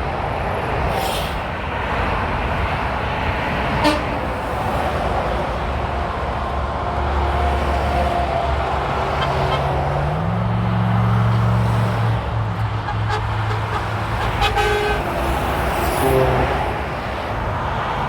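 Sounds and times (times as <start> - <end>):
truck horn toots: 3.8 - 4.3, 9.1 - 9.8, 12.7 - 16.7.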